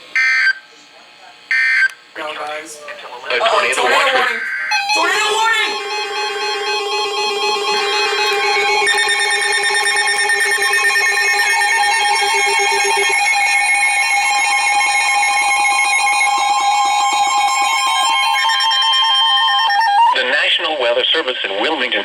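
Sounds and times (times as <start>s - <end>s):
steady electronic alarm tones: 0.0s - 0.7s, 1.5s - 20.2s
warbling beep: 3.8s - 13.0s.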